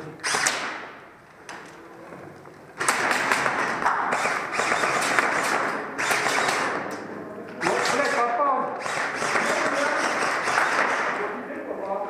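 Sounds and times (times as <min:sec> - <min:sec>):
airsoft guns firing rapidly: 0:02.8 - 0:06.9, 0:07.6 - 0:11.4.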